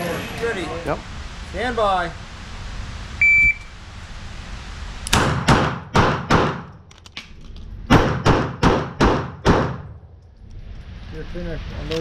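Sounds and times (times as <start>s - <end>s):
shot timer beep: 3.2s - 3.7s
pistol shots: 5.1s - 6.7s, 7.9s - 9.9s.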